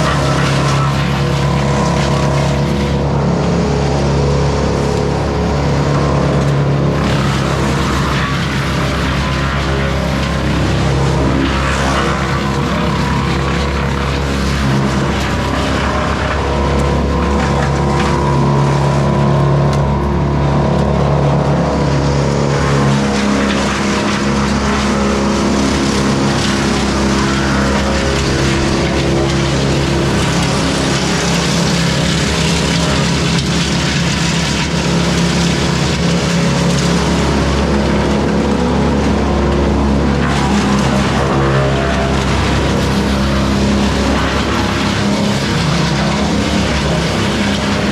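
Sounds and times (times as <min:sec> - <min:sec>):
wood chipper engine droning: 0:00.0 - 0:47.9
branches being chipped: 0:22.4 - 0:47.9.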